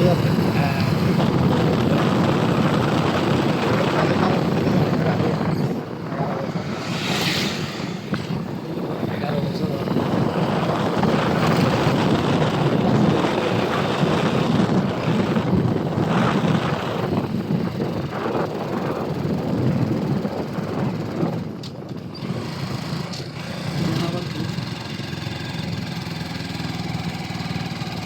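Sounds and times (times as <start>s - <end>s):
vehicle engine running: 0.0s - 19.6s
wind on microphone: 0.0s - 24.2s.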